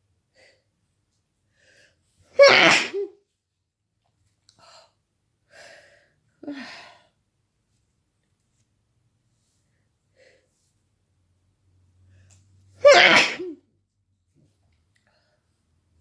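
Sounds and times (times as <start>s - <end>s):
person sneezing: 2.4s - 3.1s, 12.8s - 13.6s.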